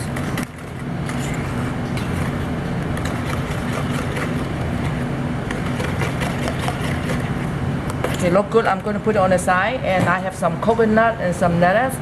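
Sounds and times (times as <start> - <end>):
low motor-like hum: 0.0 - 12.0.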